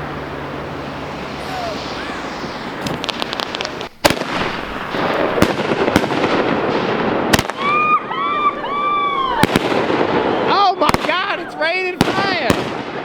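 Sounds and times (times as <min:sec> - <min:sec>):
fireworks crackle: 0:00.4 - 0:13.0
fireworks bangs: 0:00.5 - 0:13.0.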